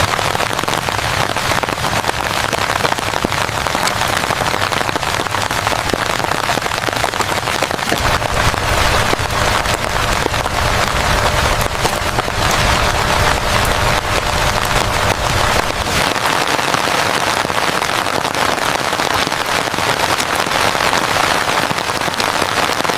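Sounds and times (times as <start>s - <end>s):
rain falling: 0.0s - 22.9s
low rumble: 3.0s - 16.3s.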